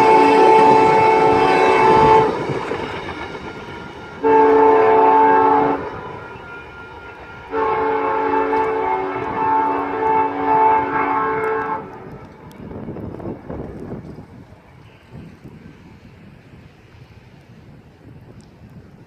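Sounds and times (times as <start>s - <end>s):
train air horn blasts: 0.0s - 12.5s
train rumbling: 0.0s - 19.0s.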